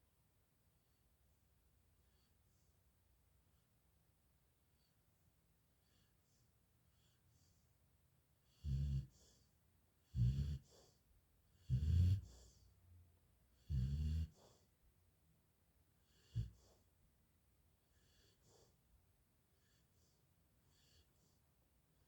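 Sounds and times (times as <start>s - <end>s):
faint breaths: 5.8s - 7.8s, 8.4s - 14.8s, 16.0s - 17.0s, 17.9s - 21.6s.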